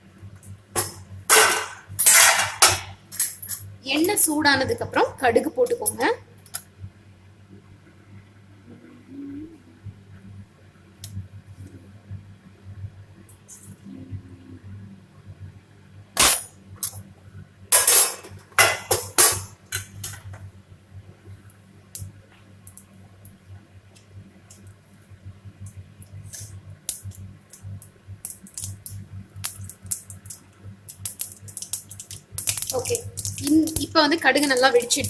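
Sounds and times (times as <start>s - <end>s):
seeds popping in hot oil: 21.4s - 24.9s, 25.6s - 35.0s.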